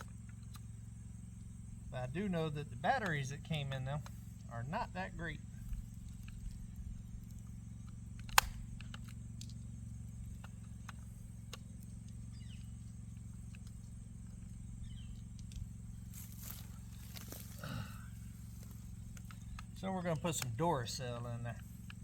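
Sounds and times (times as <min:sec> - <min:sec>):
steady low hum: 0:00.0 - 0:22.0
small plastic clicks: 0:06.0 - 0:09.6.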